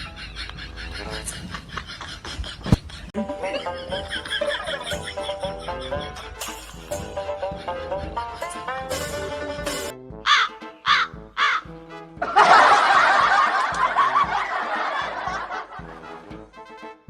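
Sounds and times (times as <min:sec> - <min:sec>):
background music: 0:00.0 - 0:02.3, 0:03.1 - 0:17.0
loud laughter: 0:00.0 - 0:11.6, 0:12.2 - 0:16.1
caw-like calls: 0:10.3 - 0:11.7.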